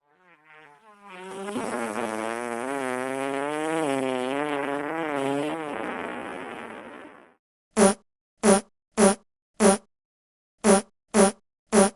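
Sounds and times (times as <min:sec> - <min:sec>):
wavering buzzing drone: 0:00.0 - 0:02.0.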